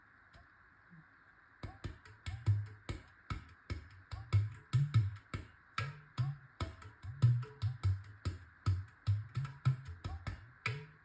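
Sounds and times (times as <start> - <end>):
clay drum played by hand: 1.6 - 11.0.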